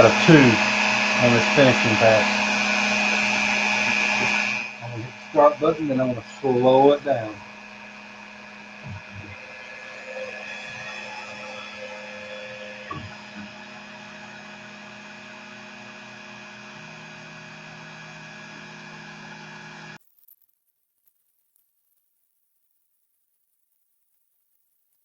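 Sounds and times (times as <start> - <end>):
router motor humming: 0.0 - 20.0.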